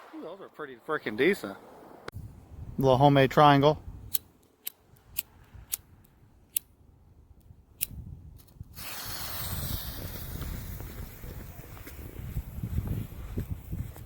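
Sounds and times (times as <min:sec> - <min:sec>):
wind rumble on microphone: 0:02.1 - 0:03.0, 0:03.7 - 0:04.2, 0:04.9 - 0:14.0
firecracker fuse hissing: 0:08.7 - 0:12.0.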